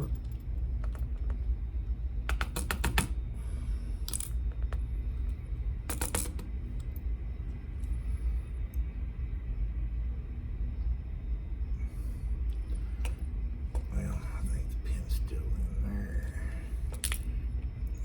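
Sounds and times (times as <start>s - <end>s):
small metal lock parts clicking: 2.3s - 3.2s, 4.0s - 4.8s, 5.9s - 7.0s, 16.9s - 17.3s.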